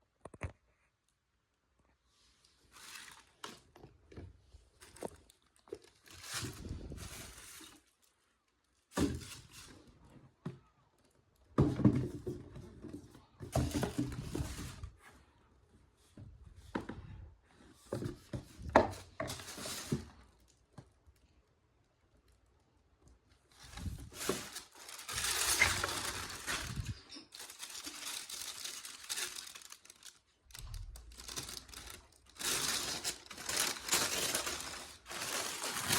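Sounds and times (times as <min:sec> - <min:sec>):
cardboard and paper rustling: 0:02.6 - 0:08.2, 0:11.5 - 0:15.4, 0:16.0 - 0:20.8, 0:23.4 - 0:35.9.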